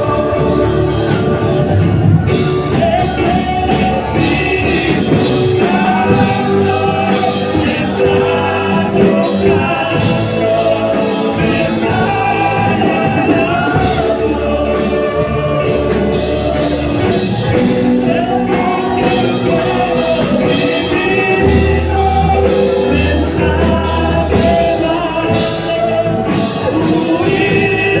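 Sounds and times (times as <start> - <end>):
band with drums and bass: 0.0 - 28.0
person singing: 0.0 - 28.0.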